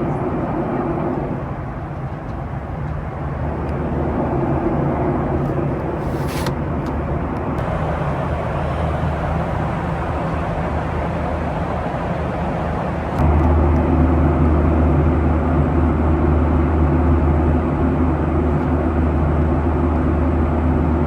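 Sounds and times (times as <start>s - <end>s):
aircraft cabin engine rush: 0.0s - 21.0s
brief hiss: 6.0s - 6.5s.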